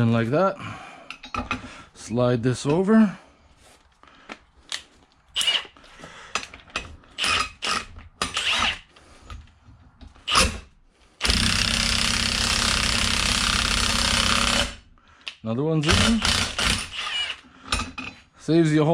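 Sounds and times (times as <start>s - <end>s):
impact wrench running: 7.2s - 8.9s, 10.2s - 14.8s, 15.8s - 17.9s.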